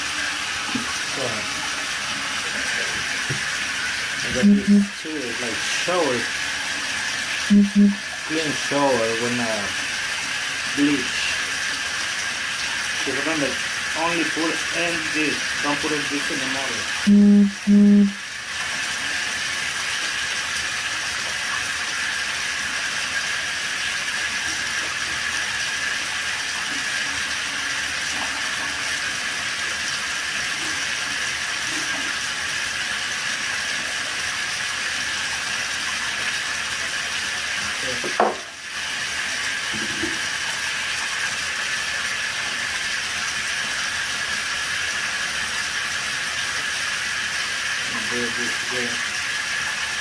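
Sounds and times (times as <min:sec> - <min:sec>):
tap water running: 0:00.0 - 0:50.0
knock: 0:38.0 - 0:38.5.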